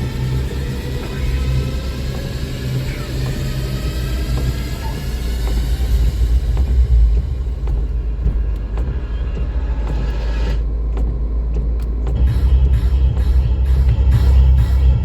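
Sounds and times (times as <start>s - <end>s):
sharp ticks: 0.0s - 14.0s
car rumbling on road: 0.0s - 15.0s
music: 0.0s - 15.0s.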